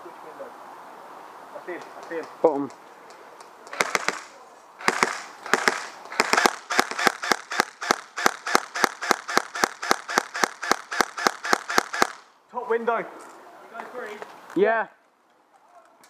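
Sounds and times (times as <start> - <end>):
airsoft gun shots: 3.7 - 12.3.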